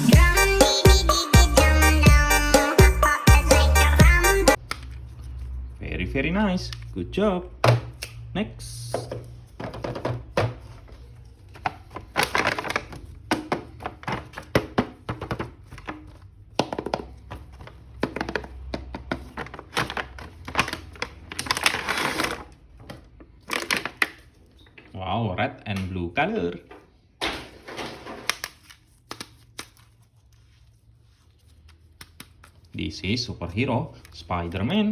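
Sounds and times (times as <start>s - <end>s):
plastic packaging crinkling: 10.7s - 14.6s, 19.3s - 24.6s, 28.1s - 32.8s.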